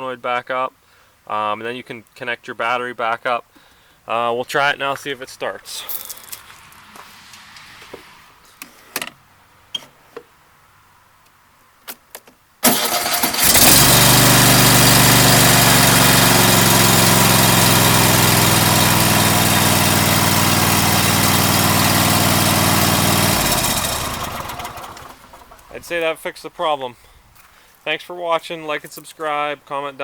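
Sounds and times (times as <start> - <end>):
engine cranking and running: 12.6 - 26.0.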